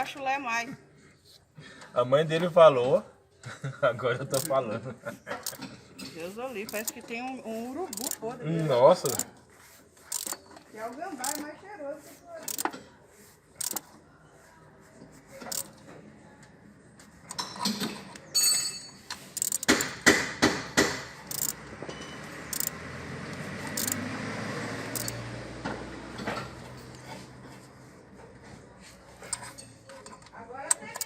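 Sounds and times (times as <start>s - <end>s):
metal tools clinking and rattling: 5.3s - 7.2s, 17.3s - 19.9s, 29.2s - 31.0s.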